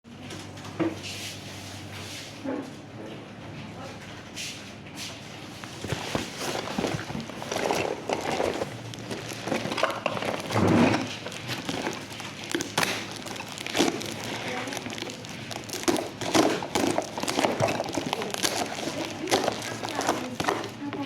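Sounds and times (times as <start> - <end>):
packaging crinkling: 5.6 - 21.0.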